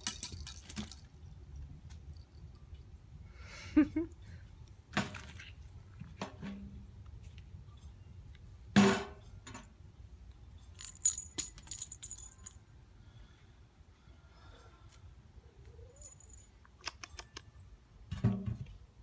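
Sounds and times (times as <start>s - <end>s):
metallic jingling and clinking: 0.0s - 1.3s, 10.6s - 12.7s, 15.9s - 16.7s.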